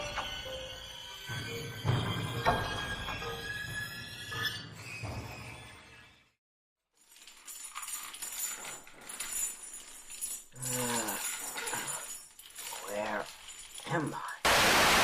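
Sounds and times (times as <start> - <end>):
metallic jangling and clinking: 7.0 - 14.4.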